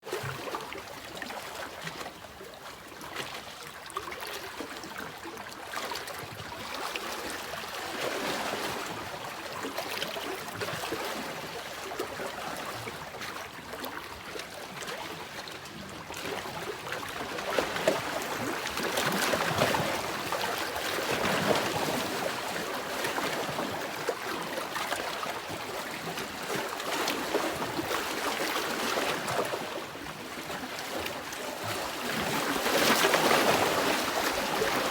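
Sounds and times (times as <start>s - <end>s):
sea waves washing in: 32.1s - 34.9s.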